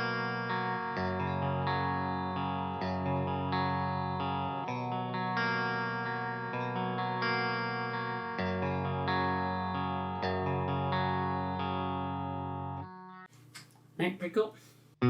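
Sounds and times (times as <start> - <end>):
electric guitar chords: 0.0 - 13.3.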